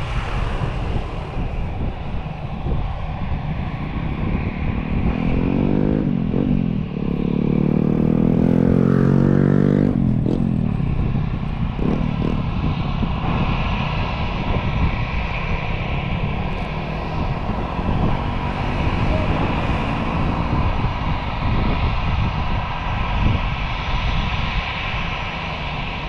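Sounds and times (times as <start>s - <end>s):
background rumble: 0.0s - 5.3s, 9.9s - 22.8s
vehicle engine accelerating: 0.0s - 23.5s.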